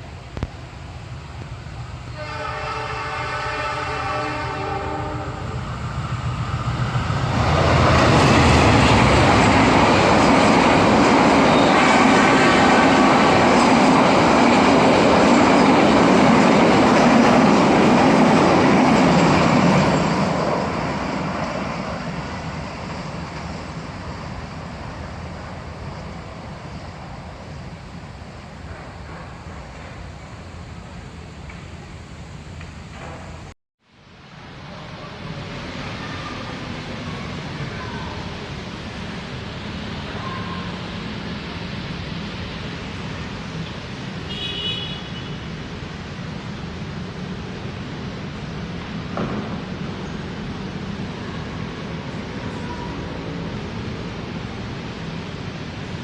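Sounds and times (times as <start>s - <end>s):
train wheels rumbling on rails: 0.0s - 33.6s, 34.3s - 56.0s
train horn: 2.1s - 5.6s, 44.3s - 45.5s.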